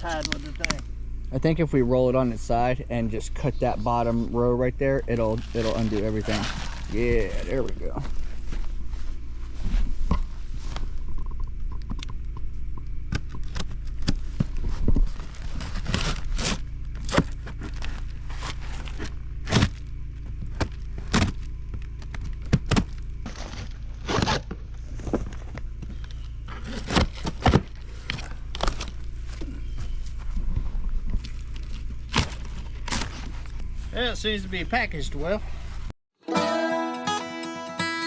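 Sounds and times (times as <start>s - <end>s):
steady low rumble: 0.0s - 35.9s
cardboard boxes being unpacked: 5.3s - 7.8s, 15.0s - 19.8s, 23.3s - 25.4s, 26.5s - 29.4s.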